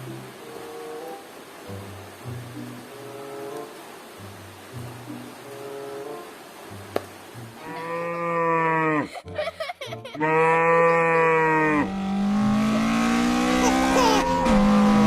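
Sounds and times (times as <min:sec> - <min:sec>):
cow mooing: 0:07.6 - 0:09.0, 0:10.2 - 0:12.0.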